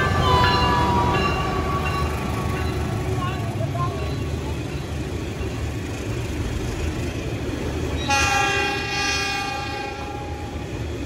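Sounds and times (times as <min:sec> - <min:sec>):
train rumbling: 0:00.0 - 0:11.0
locomotive horn blast: 0:08.1 - 0:10.5.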